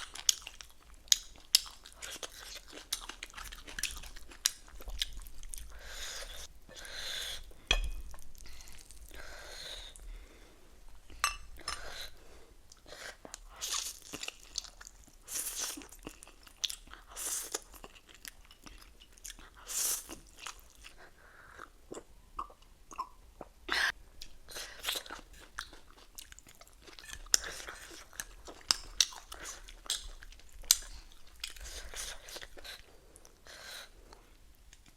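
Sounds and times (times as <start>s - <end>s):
person chewing and crunching: 0.0s - 6.8s, 7.4s - 10.0s, 12.7s - 21.0s, 24.2s - 33.4s.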